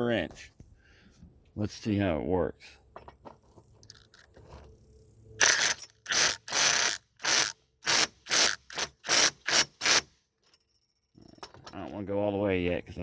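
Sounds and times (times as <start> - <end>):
impact driver hammering bolt: 5.4 - 10.1.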